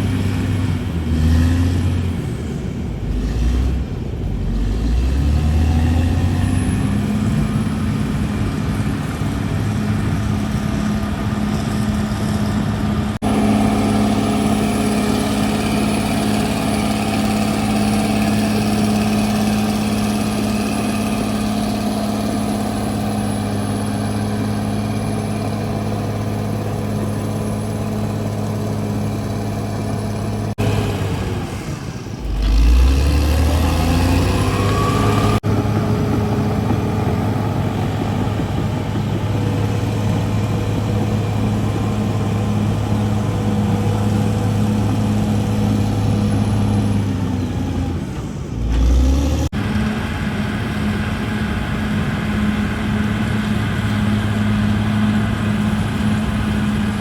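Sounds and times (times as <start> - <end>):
bulldozer diesel engine running: 0.0 - 57.0
rising whine: 13.0 - 47.8.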